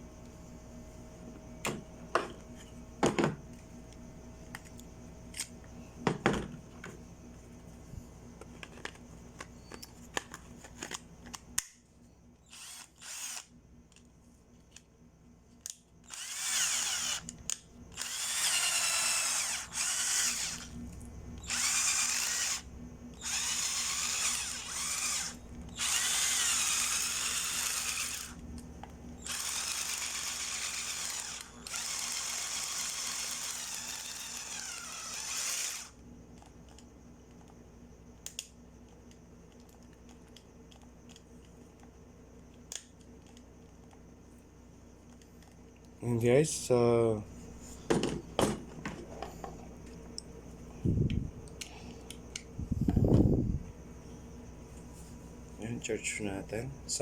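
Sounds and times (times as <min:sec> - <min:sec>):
cordless drill motor whirring: 0:12.4 - 0:13.6, 0:16.0 - 0:28.4, 0:29.2 - 0:36.0.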